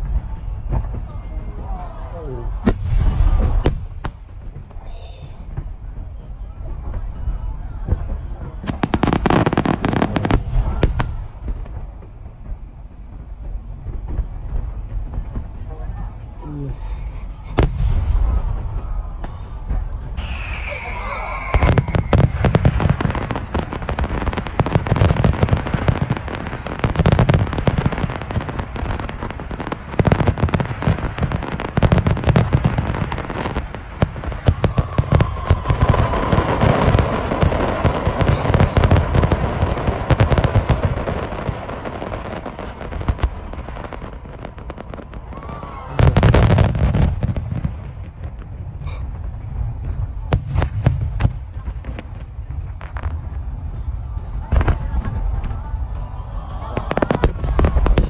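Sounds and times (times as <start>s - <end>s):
fireworks booming and crackling: 0.0s - 58.0s.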